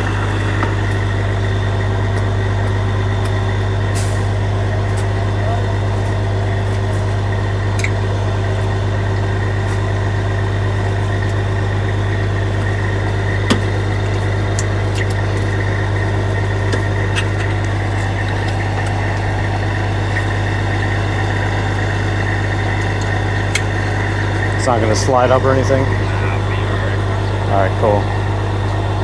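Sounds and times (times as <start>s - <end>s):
diesel engine idling: 0.0s - 29.0s.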